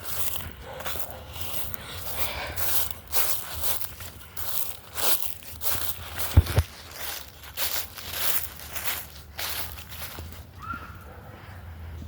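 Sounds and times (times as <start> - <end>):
footsteps scuffing crunch: 0.0 - 11.3
thumps on microphone: 6.3 - 6.7.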